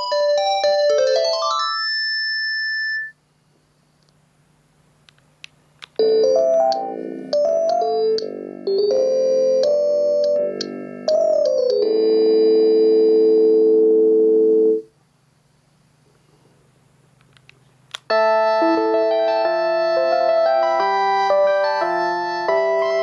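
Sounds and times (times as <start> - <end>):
phone melody ringtone: 0.0 - 3.2, 6.0 - 14.8, 18.1 - 23.0.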